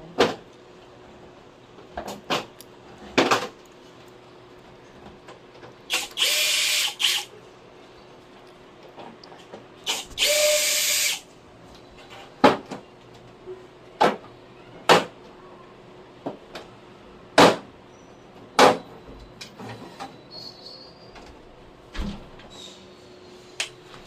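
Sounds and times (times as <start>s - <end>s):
power drill running: 5.9s - 7.3s, 9.8s - 11.2s.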